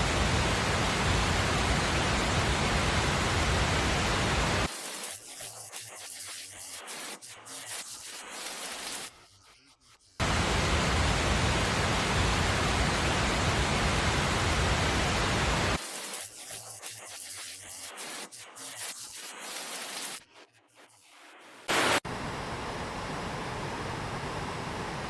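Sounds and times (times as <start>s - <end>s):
uneven rain-like patter: 0.0s - 4.7s, 10.2s - 15.8s
loud static-like hiss: 0.0s - 9.1s, 10.2s - 20.3s, 20.9s - 25.0s.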